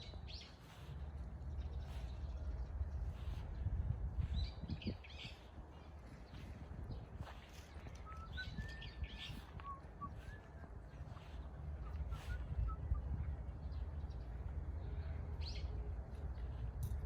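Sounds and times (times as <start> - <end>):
steady low rumble: 0.0 - 17.0
thin whistled bird notes: 7.7 - 10.6, 11.2 - 13.2.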